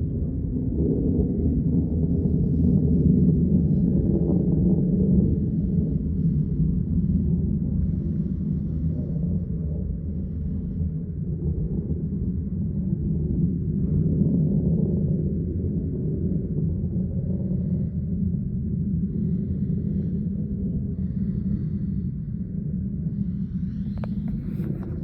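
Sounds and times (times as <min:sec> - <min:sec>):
low rumble from the sky: 0:00.0 - 0:25.0.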